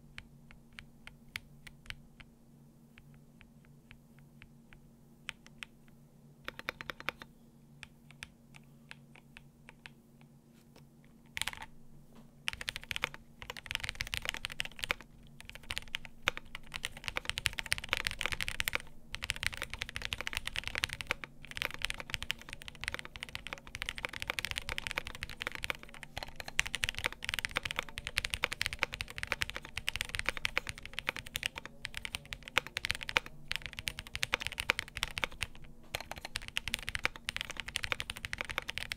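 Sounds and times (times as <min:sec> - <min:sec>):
mechanical keyboard typing: 0:06.5 - 0:07.3, 0:11.3 - 0:11.7, 0:12.5 - 0:38.9.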